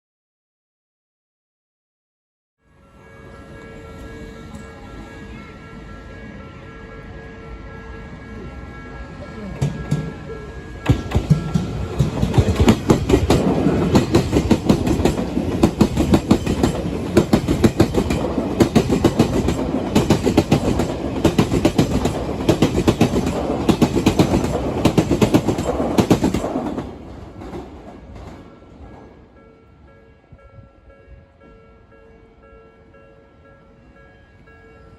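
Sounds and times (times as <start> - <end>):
train wheels clacking over rail joints: 9.6 - 10.2, 10.8 - 29.2.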